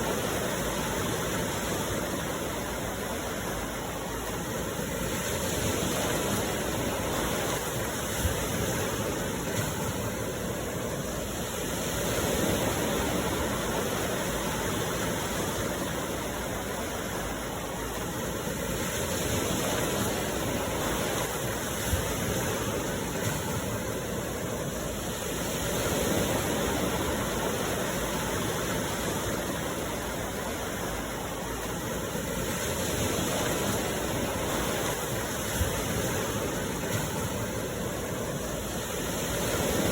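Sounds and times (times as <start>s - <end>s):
sea waves breaking on shore: 0.0s - 39.9s.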